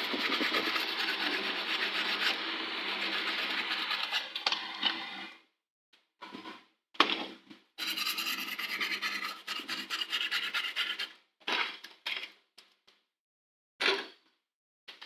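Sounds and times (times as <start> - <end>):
scratching on a circuit board: 0.0 - 4.4, 7.8 - 11.1.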